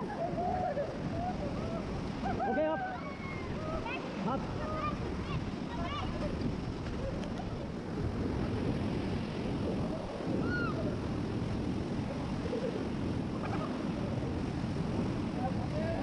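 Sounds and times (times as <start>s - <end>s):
river water rushing: 0.0s - 6.8s
wind noise on microphone: 0.0s - 16.0s.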